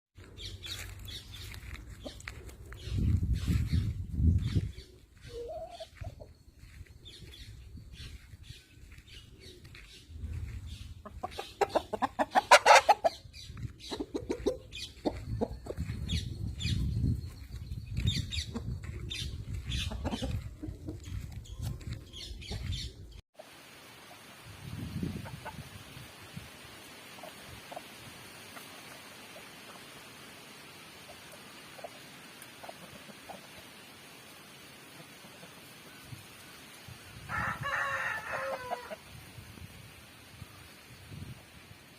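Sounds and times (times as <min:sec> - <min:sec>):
roosters clucking: 0:00.2 - 0:08.2, 0:08.8 - 0:23.2, 0:25.0 - 0:26.0, 0:27.0 - 0:30.1, 0:31.0 - 0:34.0, 0:34.8 - 0:36.2, 0:37.3 - 0:39.1.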